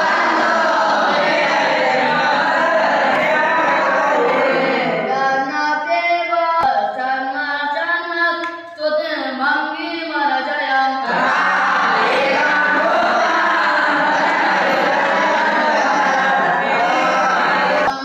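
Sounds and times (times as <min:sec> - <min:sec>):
group chanting in unison: 0:00.0 - 0:05.4, 0:11.0 - 0:18.0.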